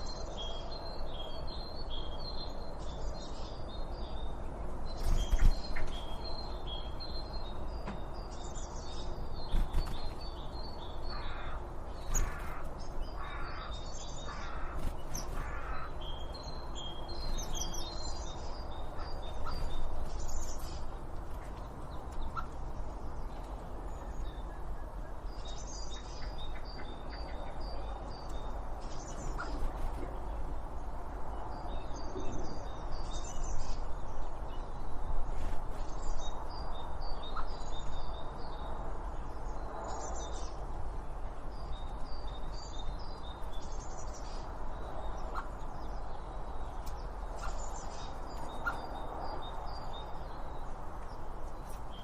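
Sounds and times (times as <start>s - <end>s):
harsh caw-like bird calls: 11.1s - 16.0s
birds chirping: 41.6s - 52.0s.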